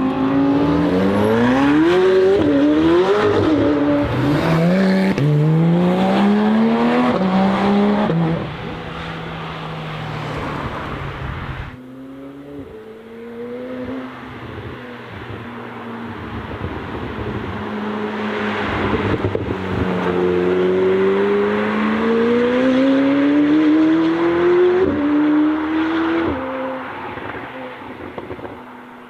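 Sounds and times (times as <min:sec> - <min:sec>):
car engine accelerating hard: 0:00.0 - 0:09.3.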